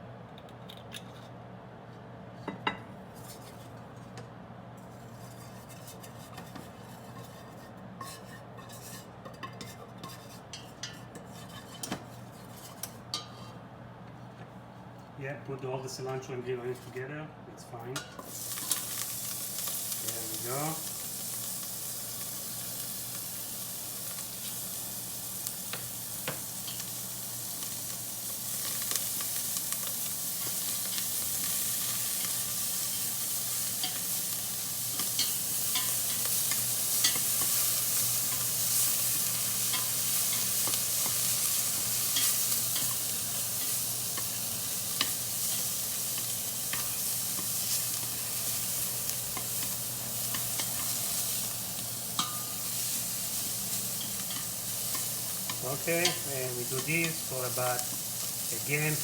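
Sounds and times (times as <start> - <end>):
herbs sizzling in oil: 17.9 - 59.0.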